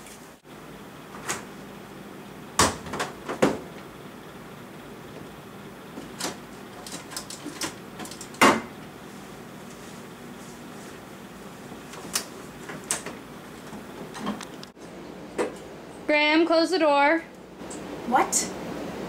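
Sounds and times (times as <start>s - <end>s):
knocks and clunks on refrigerator: 8.4s - 8.7s.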